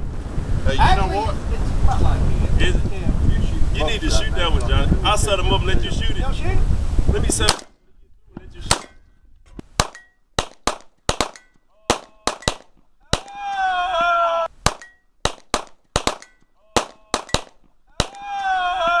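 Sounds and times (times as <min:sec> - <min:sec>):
rifle shots: 0:07.4 - 0:07.8, 0:08.6 - 0:09.0, 0:09.8 - 0:13.3, 0:14.6 - 0:18.2
high metallic ping: 0:09.8 - 0:10.3, 0:11.2 - 0:11.7, 0:14.7 - 0:15.2, 0:16.1 - 0:16.6.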